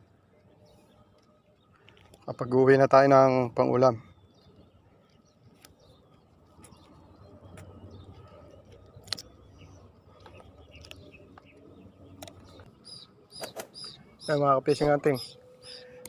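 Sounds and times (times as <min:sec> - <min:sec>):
faint bird calls: 0:03.9 - 0:16.0.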